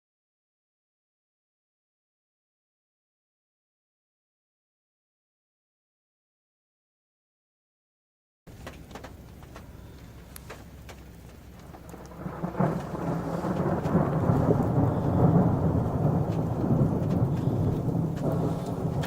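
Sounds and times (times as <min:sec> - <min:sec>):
rolling thunder: 0:08.5 - 0:19.0.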